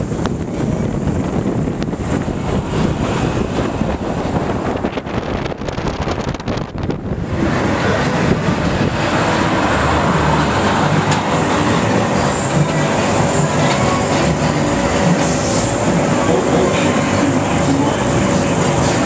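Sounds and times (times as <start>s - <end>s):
fairground ride rumble and rattle: 0.0s - 19.0s
rushing noise: 0.0s - 19.0s.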